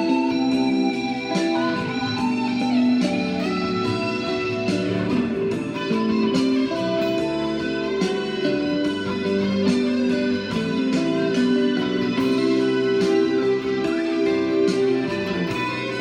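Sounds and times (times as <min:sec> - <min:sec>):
guitar plucked notes and chords: 0:00.0 - 0:16.0.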